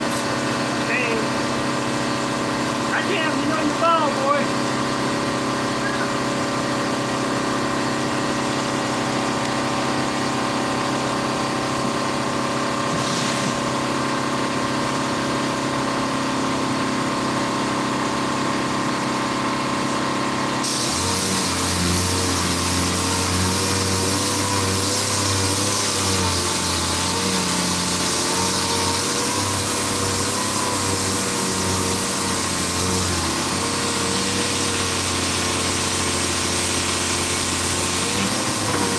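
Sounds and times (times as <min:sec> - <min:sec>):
shop machinery hum: 0:00.0 - 0:38.9
power sander whine: 0:20.7 - 0:38.9.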